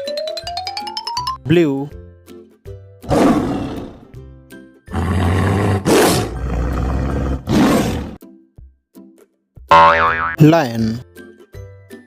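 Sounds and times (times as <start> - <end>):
light background music: 0.0 - 12.0
cartoon lion roaring: 3.0 - 4.1, 4.9 - 8.2.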